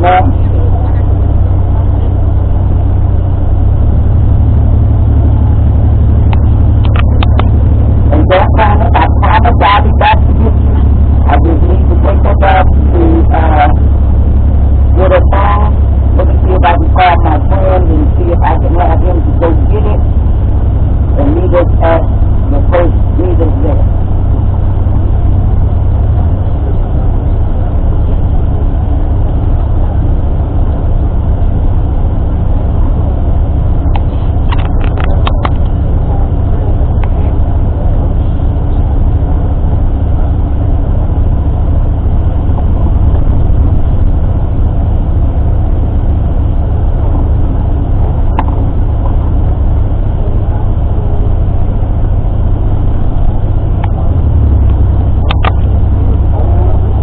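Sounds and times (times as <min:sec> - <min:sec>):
bus engine and road rumble: 0:00.0 - 0:57.0.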